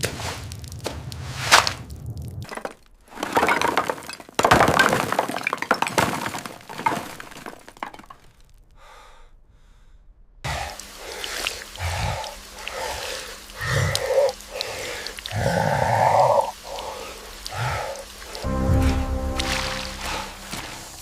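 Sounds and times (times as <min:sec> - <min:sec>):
cracking and breaking noises: 0:00.0 - 0:08.6.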